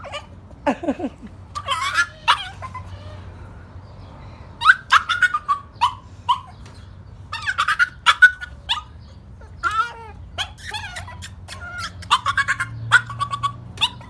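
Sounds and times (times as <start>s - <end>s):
small dog yelping: 0.0s - 0.4s, 1.5s - 3.2s, 4.6s - 6.7s, 7.3s - 14.0s.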